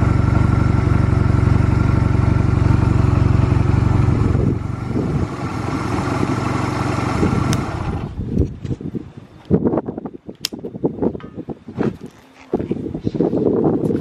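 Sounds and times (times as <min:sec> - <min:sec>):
motorcycle engine idling: 0:00.0 - 0:08.4.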